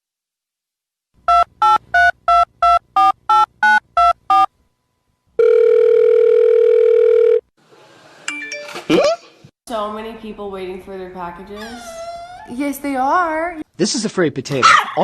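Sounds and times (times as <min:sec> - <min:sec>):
telephone ringing tone: 0:05.4 - 0:07.5.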